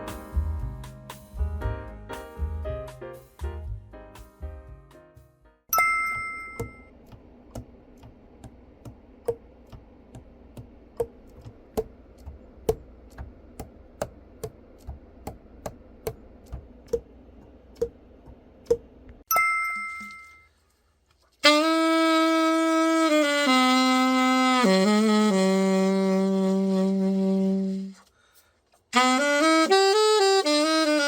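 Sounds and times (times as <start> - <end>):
bell-like ding: 5.7 - 6.9, 19.3 - 20.5.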